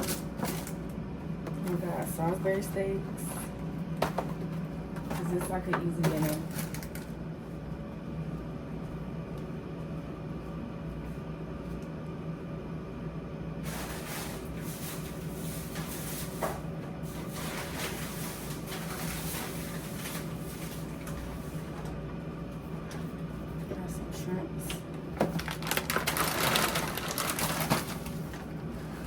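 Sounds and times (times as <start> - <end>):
steady low hum: 0.0 - 29.0
plastic and cardboard rustling: 25.2 - 29.0.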